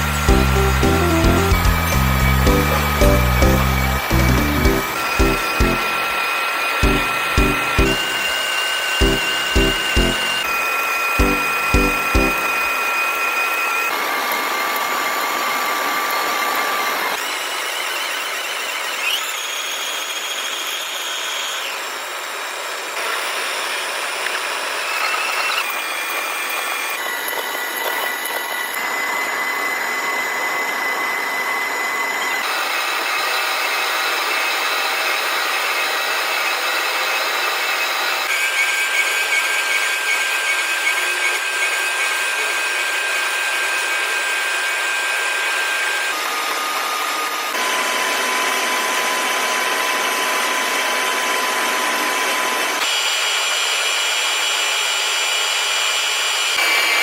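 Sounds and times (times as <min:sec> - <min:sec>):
lathe tool squealing: 0:00.0 - 0:57.0.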